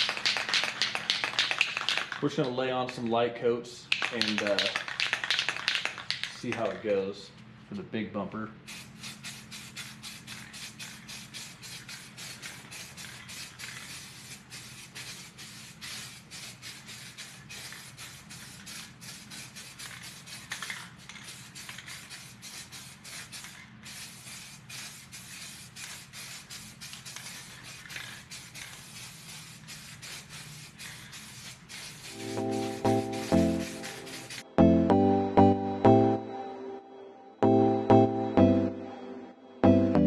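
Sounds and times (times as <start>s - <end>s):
aerosol can spraying: 0.0s - 2.4s, 3.9s - 6.8s, 8.7s - 34.5s.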